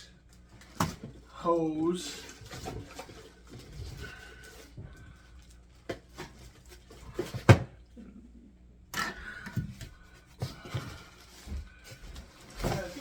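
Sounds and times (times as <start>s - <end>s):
handling knocks and rustles: 9.5s - 13.0s.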